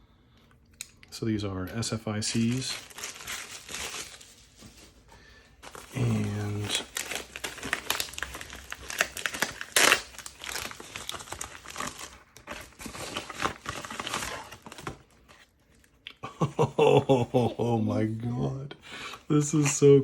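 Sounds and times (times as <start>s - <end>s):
packaging crinkling: 2.2s - 15.5s.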